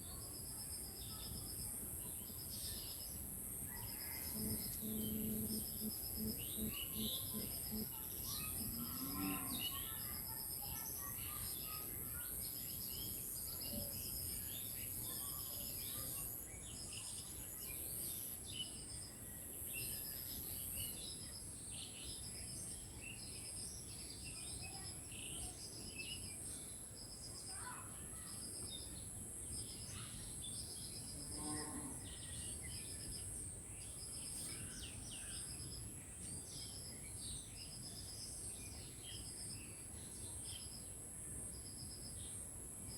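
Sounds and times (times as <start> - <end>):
insect drone: 2.6 - 10.0.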